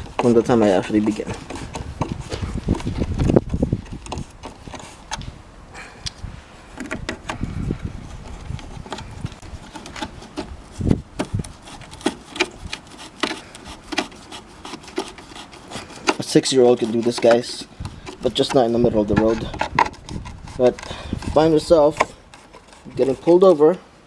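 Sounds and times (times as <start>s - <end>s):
handling clicks and knocks: 6.8s - 7.4s, 8.2s - 23.5s.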